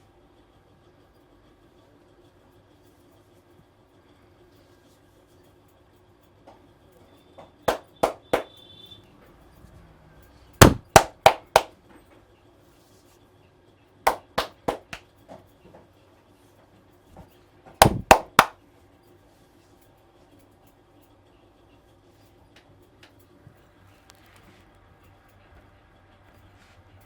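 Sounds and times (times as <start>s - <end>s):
hands slapping in massage: 7.7s - 8.5s, 10.6s - 11.7s, 14.1s - 15.0s, 17.8s - 18.6s.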